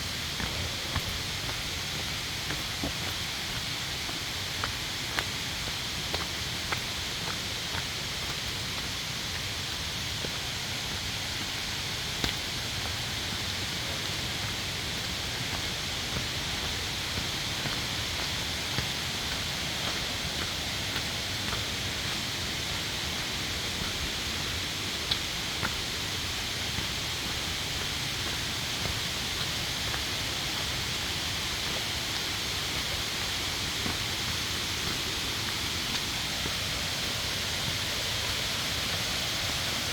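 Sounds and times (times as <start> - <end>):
mountain stream rushing: 0.0 - 39.9.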